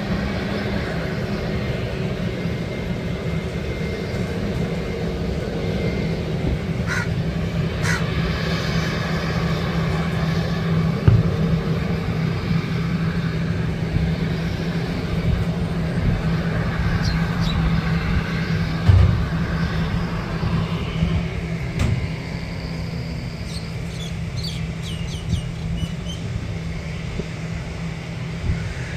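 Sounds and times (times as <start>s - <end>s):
jet engines rumbling: 0.0s - 28.9s
bird chirps: 23.4s - 26.3s.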